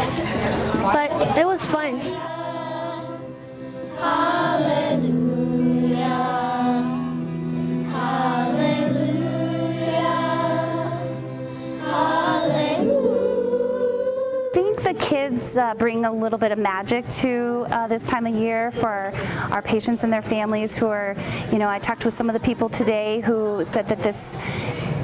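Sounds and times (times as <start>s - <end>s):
held accompaniment chords: 1.4s - 18.6s
children's choir singing a carol: 1.5s - 16.7s.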